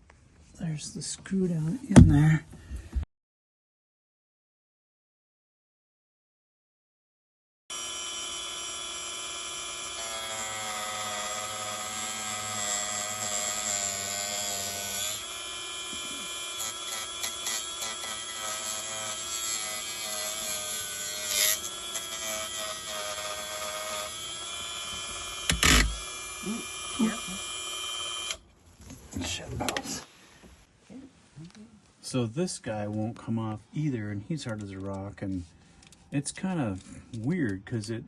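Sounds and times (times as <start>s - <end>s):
rotary tool grinding: 7.7s - 28.4s.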